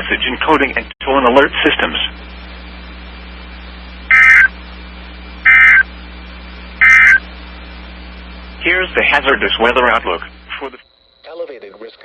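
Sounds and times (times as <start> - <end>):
receiver hiss: 0.0 - 12.0
data tone bursts: 4.1 - 4.6, 5.4 - 5.9, 6.8 - 7.3.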